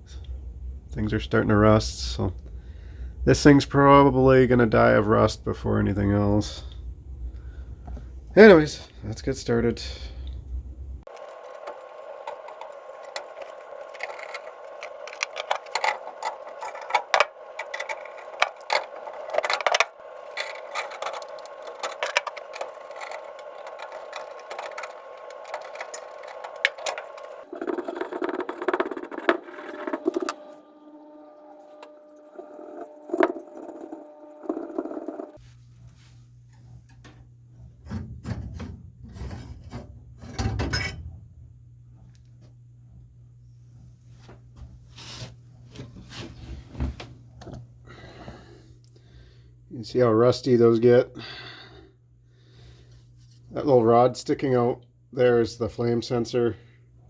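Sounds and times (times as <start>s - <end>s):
furnace whirring hum: 0.0s - 57.0s
metal parts and tools clicking: 11.1s - 28.8s.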